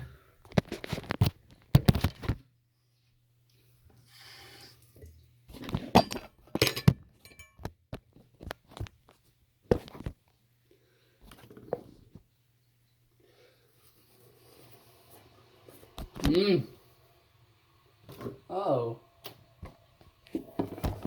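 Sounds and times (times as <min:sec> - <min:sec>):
objects knocking and clinking: 0:05.8 - 0:07.8.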